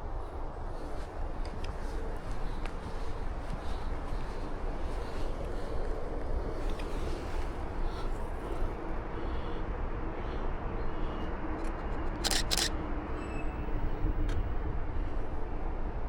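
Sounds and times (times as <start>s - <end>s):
outdoor background noise: 0.0s - 16.0s
camera shutter clicks: 12.2s - 12.7s.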